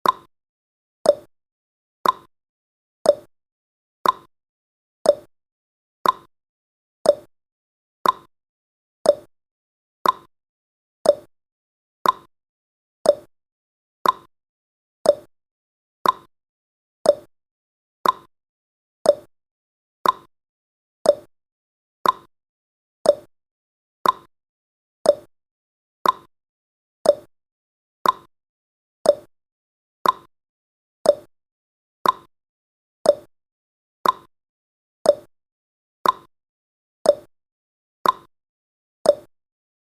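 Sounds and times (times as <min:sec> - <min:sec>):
countdown timer ticking: 0:07.1 - 0:07.3, 0:09.1 - 0:09.3, 0:11.1 - 0:11.3, 0:13.1 - 0:13.3, 0:15.1 - 0:15.3, 0:17.1 - 0:17.3, 0:19.1 - 0:19.3, 0:21.1 - 0:21.3, 0:23.1 - 0:23.3, 0:24.0 - 0:24.3, 0:25.1 - 0:25.3, 0:26.0 - 0:26.3, 0:27.0 - 0:27.3, 0:28.0 - 0:28.3, 0:29.1 - 0:29.3, 0:30.0 - 0:30.3, 0:31.1 - 0:31.3, 0:32.0 - 0:32.3, 0:33.1 - 0:33.3, 0:34.0 - 0:34.3, 0:35.1 - 0:35.3, 0:36.0 - 0:36.3, 0:37.1 - 0:37.3, 0:38.0 - 0:38.3, 0:39.1 - 0:39.3.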